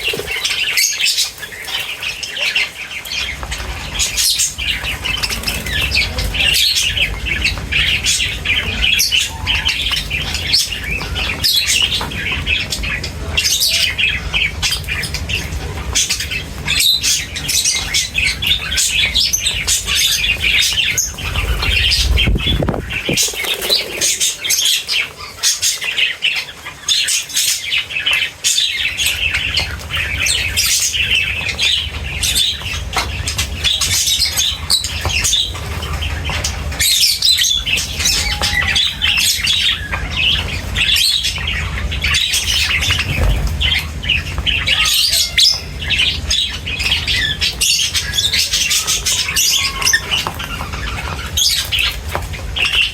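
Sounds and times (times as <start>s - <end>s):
birds chirping and squawking: 0.0s - 52.9s
low rumble: 19.5s - 24.3s.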